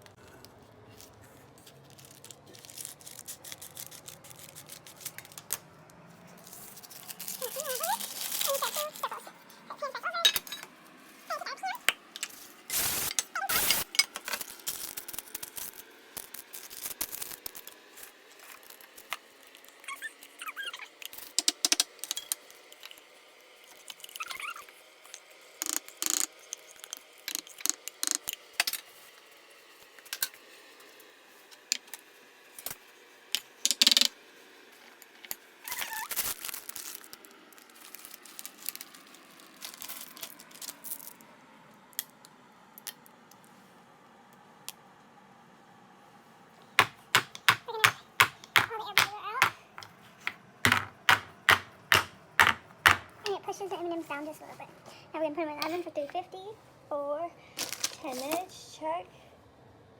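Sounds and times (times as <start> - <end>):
paper rustling: 6.3 - 9.4
baking pans clicking and tapping: 46.8 - 53.2.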